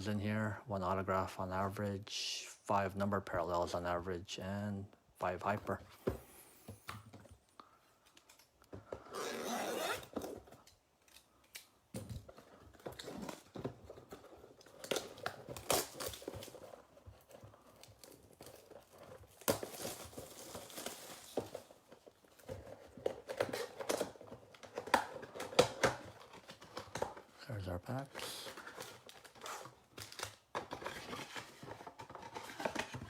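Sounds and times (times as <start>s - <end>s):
plastic shrink-wrap crinkling: 12.6s - 27.2s.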